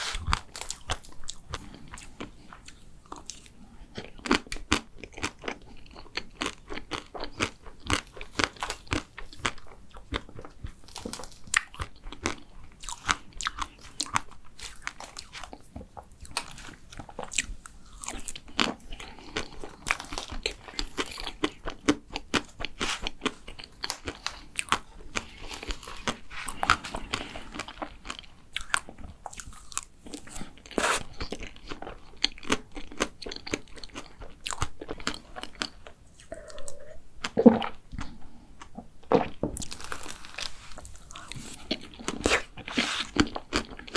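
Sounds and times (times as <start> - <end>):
crisp shell crunching: 39.4 - 43.9.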